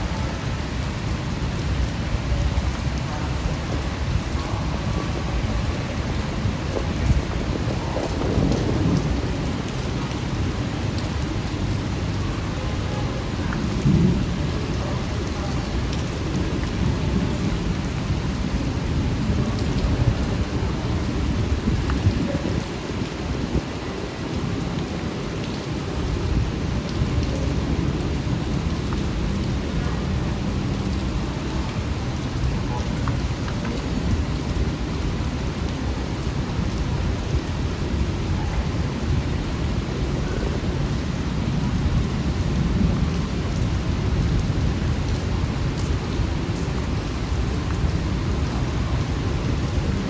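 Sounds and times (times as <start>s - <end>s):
rain falling on a street: 0.0s - 50.0s.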